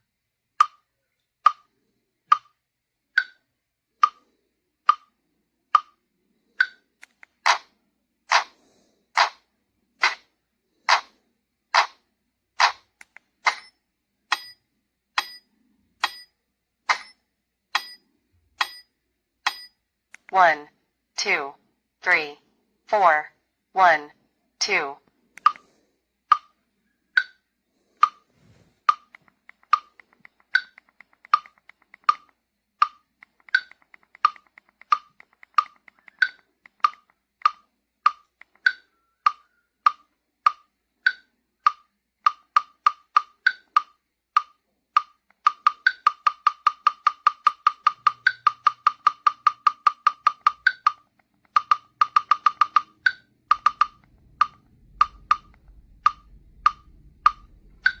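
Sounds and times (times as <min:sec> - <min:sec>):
metronome clicking: 0:00.6 - 0:00.8, 0:01.4 - 0:01.7, 0:02.3 - 0:02.6, 0:03.2 - 0:03.4, 0:04.0 - 0:04.3, 0:04.9 - 0:07.6, 0:14.3 - 0:14.6, 0:15.2 - 0:16.3, 0:17.8 - 0:20.3, 0:25.4 - 0:25.7, 0:27.2 - 0:27.4, 0:28.9 - 0:58.0.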